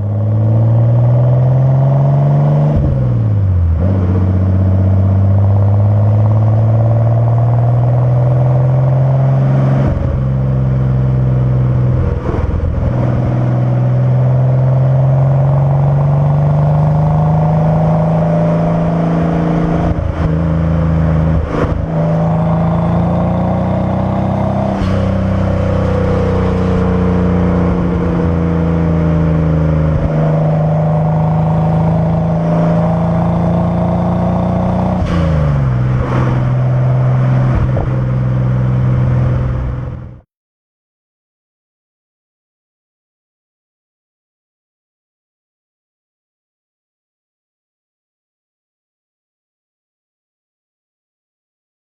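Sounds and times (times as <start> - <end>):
car engine and exhaust running: 0.0 - 40.2.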